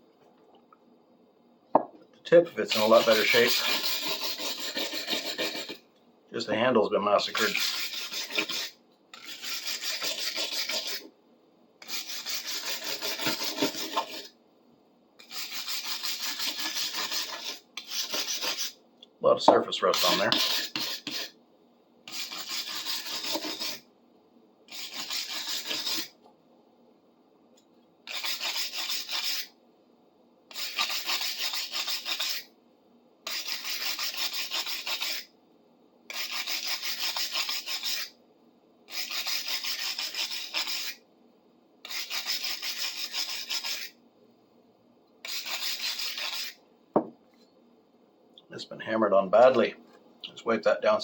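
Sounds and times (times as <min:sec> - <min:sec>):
sanding rust on steel: 0:02.7 - 0:05.8, 0:07.2 - 0:11.0, 0:11.8 - 0:14.3, 0:15.2 - 0:18.8, 0:20.0 - 0:21.3, 0:22.1 - 0:23.8, 0:24.7 - 0:26.1, 0:28.1 - 0:29.5, 0:30.5 - 0:32.5, 0:33.3 - 0:35.3, 0:36.1 - 0:38.1, 0:38.9 - 0:41.0, 0:41.9 - 0:44.0, 0:45.3 - 0:46.6.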